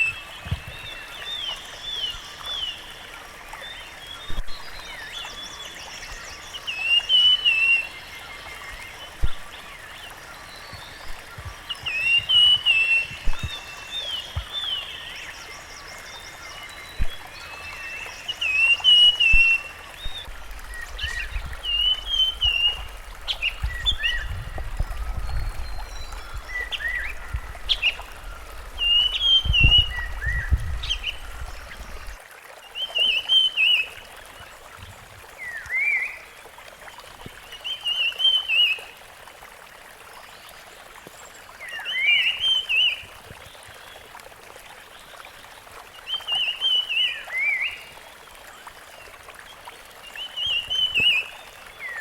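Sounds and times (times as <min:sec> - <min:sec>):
bird singing warbling phrases: 0:11.7 - 0:32.2.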